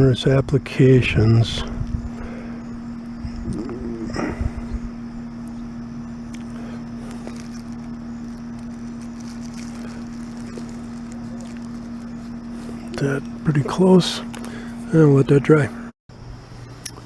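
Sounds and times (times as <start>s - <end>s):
low-pitched hum: 0.0s - 17.0s
low rumble: 1.1s - 14.7s.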